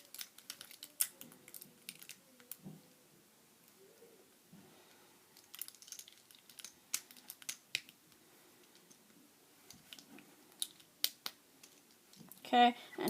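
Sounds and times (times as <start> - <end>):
plastic cube pieces clicking: 0.0 - 2.6, 5.4 - 8.0, 9.7 - 12.4.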